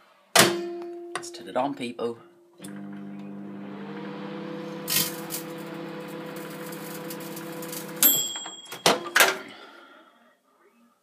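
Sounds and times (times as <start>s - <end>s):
microwave oven humming: 2.6s - 8.1s.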